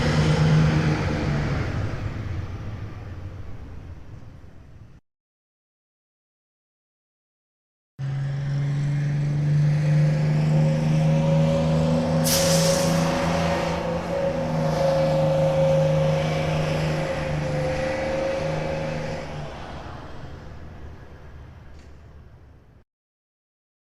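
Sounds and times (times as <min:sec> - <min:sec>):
bus engine running: 0:00.0 - 0:05.0, 0:08.0 - 0:22.8
loud air hiss: 0:12.2 - 0:13.5.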